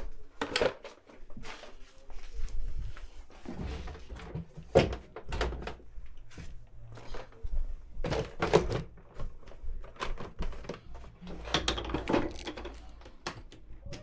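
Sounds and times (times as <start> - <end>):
equipment knocking and clattering: 3.6 - 6.5, 8.0 - 14.0.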